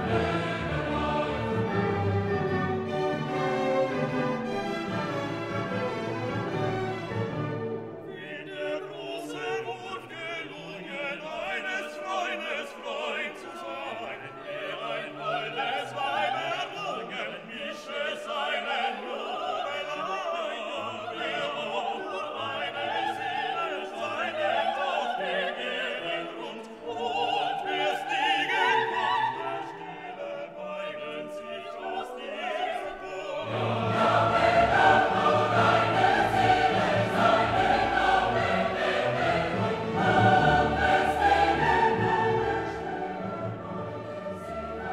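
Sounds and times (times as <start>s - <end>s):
orchestra playing: 0.0s - 8.5s, 33.4s - 44.9s
operatic singing: 0.0s - 44.9s.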